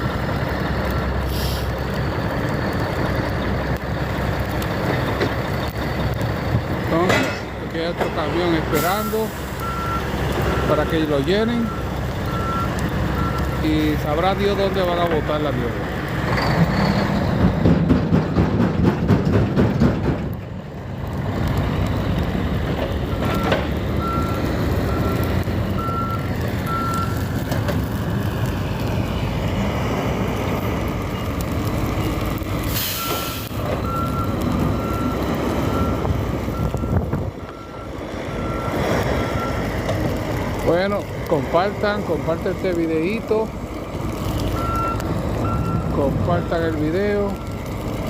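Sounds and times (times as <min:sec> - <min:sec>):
diesel engines running: 0:00.0 - 0:48.0
air hiss: 0:01.3 - 0:01.8, 0:32.7 - 0:33.6.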